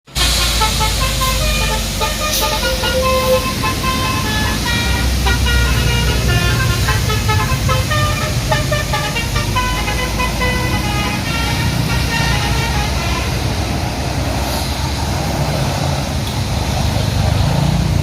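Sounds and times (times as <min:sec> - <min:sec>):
bus engine rumble: 0:00.0 - 0:18.0
bus horn melody: 0:00.1 - 0:14.1.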